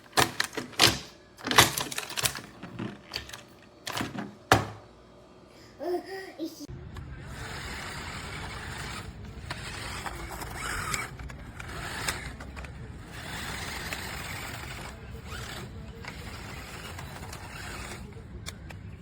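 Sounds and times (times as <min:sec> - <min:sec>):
toy truck motor and tyres rushing: 0:07.0 - 0:19.0.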